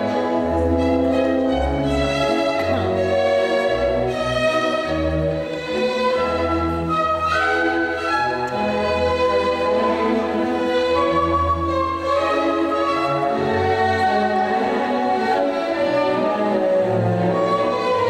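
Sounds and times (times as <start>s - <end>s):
orchestral music with strings: 0.0s - 18.0s.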